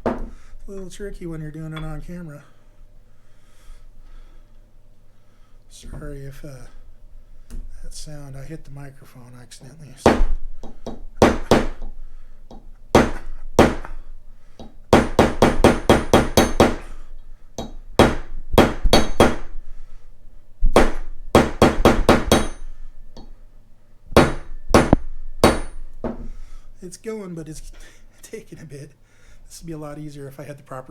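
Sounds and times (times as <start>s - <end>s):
hammer tapping on punch: 0.0s - 0.4s, 10.0s - 14.0s, 14.6s - 16.9s, 17.6s - 19.5s, 20.7s - 23.4s, 24.2s - 26.4s.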